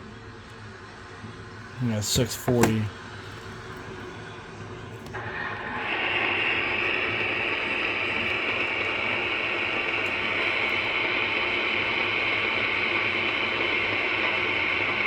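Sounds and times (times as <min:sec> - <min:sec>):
radio static hiss: 0:01.7 - 0:04.1.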